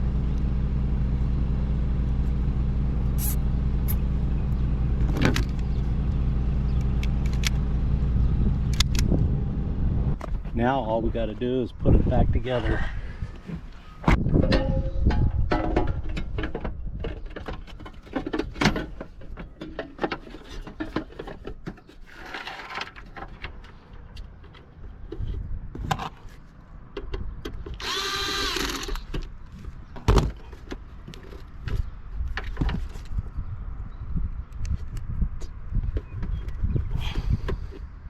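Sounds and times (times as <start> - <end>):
small power tool whirring: 27.8 - 29.1.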